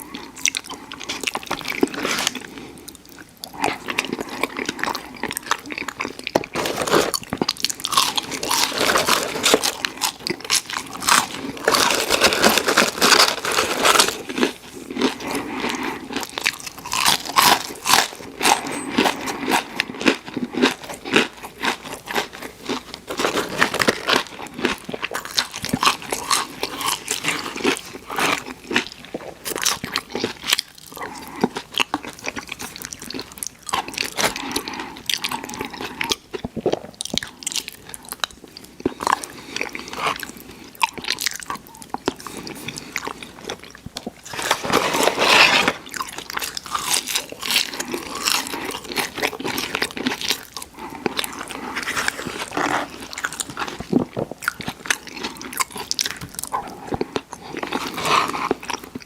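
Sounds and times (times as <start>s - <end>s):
crunching fried chicken: 0.0s - 59.0s
wet chewing: 45.8s - 59.0s.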